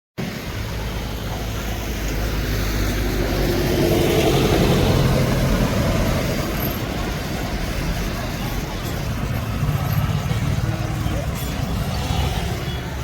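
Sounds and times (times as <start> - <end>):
outdoor background noise: 0.2 - 13.0
vehicle engine running: 3.0 - 13.0.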